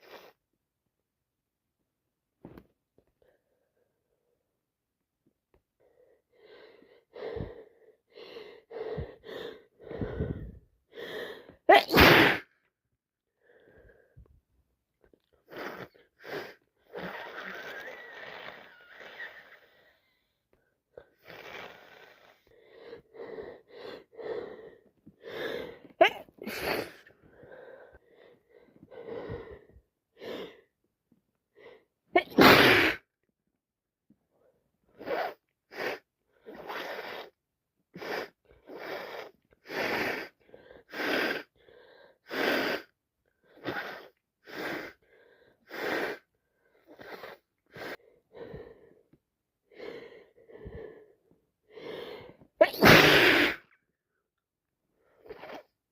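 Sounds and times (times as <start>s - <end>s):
person sneezing: 11.7s - 12.5s, 26.0s - 27.0s, 32.2s - 33.1s, 52.6s - 53.7s.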